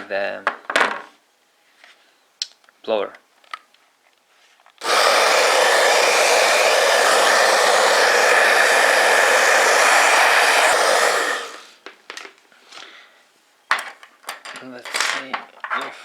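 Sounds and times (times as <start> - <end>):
hot-air blower rushing: 4.8 - 11.8.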